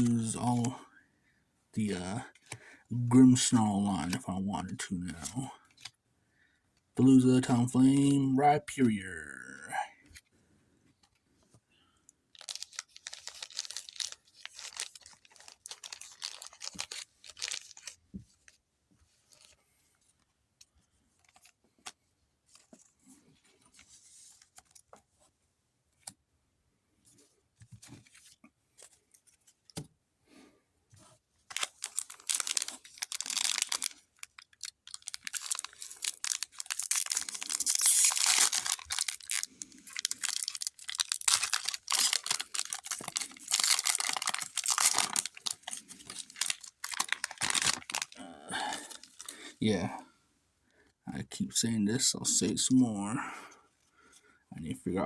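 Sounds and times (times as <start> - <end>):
wrapper tearing and crinkling: 12.3 - 18.0, 31.5 - 49.3.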